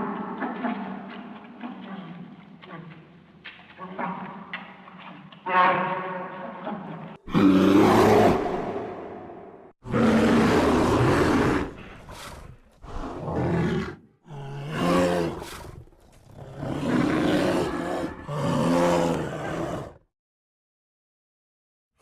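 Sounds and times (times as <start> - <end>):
monster roaring and growling: 7.3 - 20.0.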